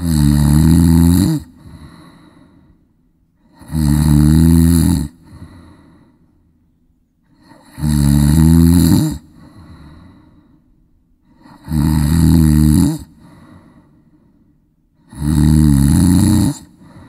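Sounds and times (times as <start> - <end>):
person snoring: 0.0 - 2.8, 3.4 - 6.2, 7.3 - 10.5, 11.2 - 14.0, 15.0 - 17.0
quiet breathing: 0.0 - 4.0, 5.0 - 7.9, 8.9 - 11.8, 12.8 - 15.3, 16.3 - 17.0.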